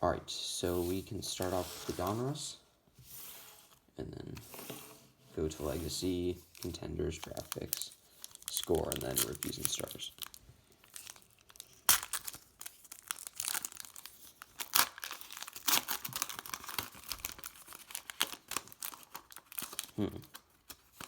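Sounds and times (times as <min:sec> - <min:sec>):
wrapper crinkling: 0:06.4 - 0:21.0
wrapper ripping: 0:06.5 - 0:21.0.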